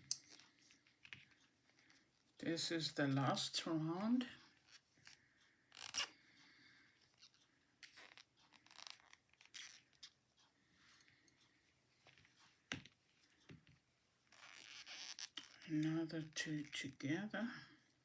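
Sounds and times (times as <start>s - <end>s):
knitting needles clicking: 0.0s - 1.4s.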